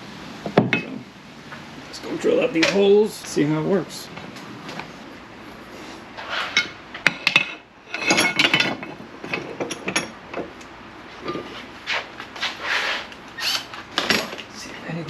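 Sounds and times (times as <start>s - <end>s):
objects scraping: 5.7s - 10.5s, 11.1s - 14.5s.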